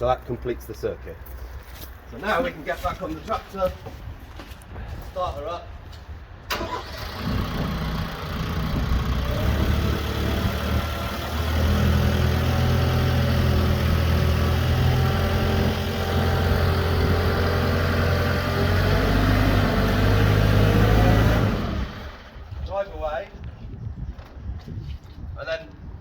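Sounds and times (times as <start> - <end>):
tractor diesel engine idling: 6.5 - 22.4.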